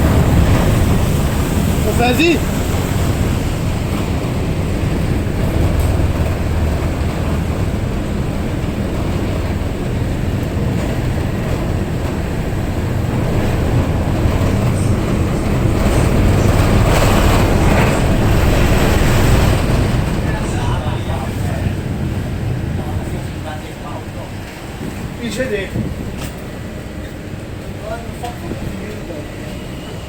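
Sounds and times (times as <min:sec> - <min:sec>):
ferry engines rumbling: 0:00.0 - 0:30.0.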